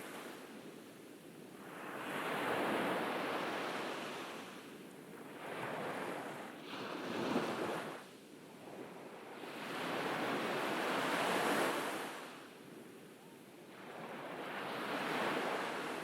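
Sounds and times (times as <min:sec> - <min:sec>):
ocean waves breaking on beach: 0:00.0 - 0:16.0
wind on microphone: 0:02.2 - 0:08.0.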